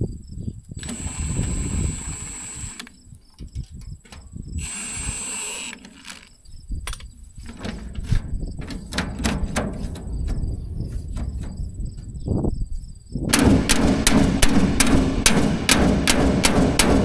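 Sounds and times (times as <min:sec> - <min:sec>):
power drill whining: 0:00.8 - 0:03.0, 0:04.6 - 0:06.4
metal parts clicking and knocking: 0:05.6 - 0:10.5.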